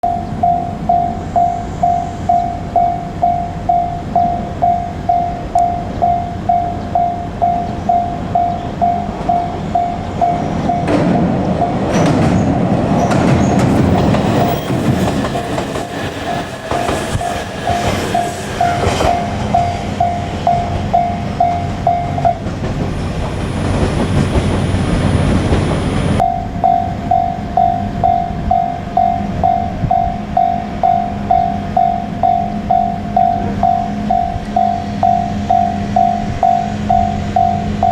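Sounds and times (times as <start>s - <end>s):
level crossing bell ringing: 0.0s - 11.0s, 17.8s - 22.4s, 26.2s - 37.9s
electric train passing: 0.0s - 37.9s.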